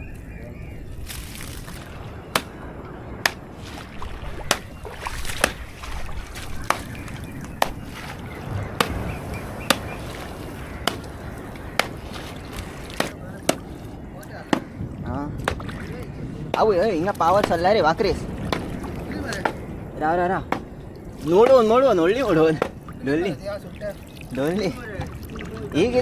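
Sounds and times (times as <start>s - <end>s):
water sloshing: 0.8s - 26.0s
plant roots being pounded: 2.2s - 2.6s, 3.2s - 5.7s, 6.4s - 7.9s, 8.6s - 10.2s, 10.8s - 12.2s, 12.8s - 13.8s, 14.4s - 14.8s, 16.5s - 19.7s, 20.4s - 20.7s.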